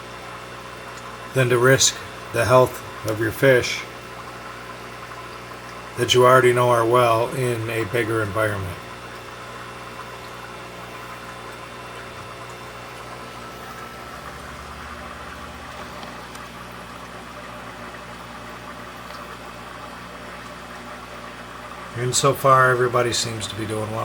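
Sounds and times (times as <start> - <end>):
electric hum of pumps: 0.0 - 24.0
water bubbling and trickling: 0.0 - 24.0.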